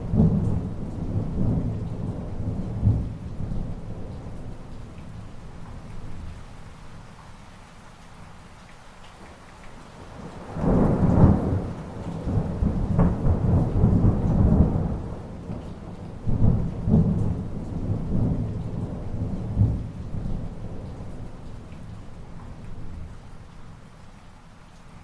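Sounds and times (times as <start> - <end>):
rolling thunder: 0.0 - 4.7, 10.5 - 15.6
steady rain: 0.0 - 25.0.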